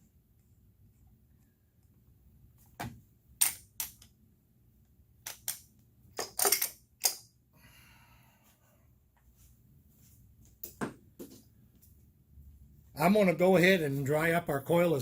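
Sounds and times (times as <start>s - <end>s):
hard parts clicking and knocking: 5.2s - 7.3s.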